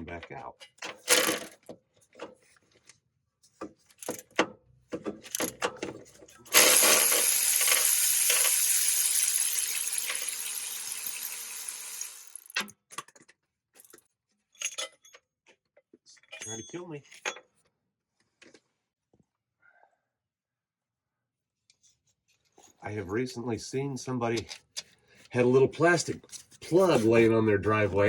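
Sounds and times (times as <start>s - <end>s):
loud hiss: 6.5s - 12.4s
hand tools clinking: 6.5s - 12.6s.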